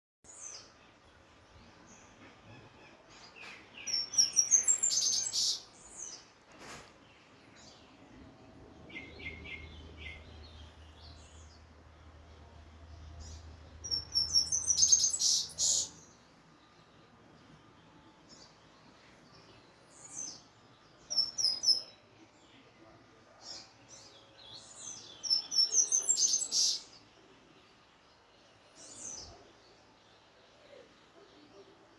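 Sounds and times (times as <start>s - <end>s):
bird singing: 0.3s - 6.3s, 7.1s - 31.8s
low steady hum: 7.9s - 13.9s.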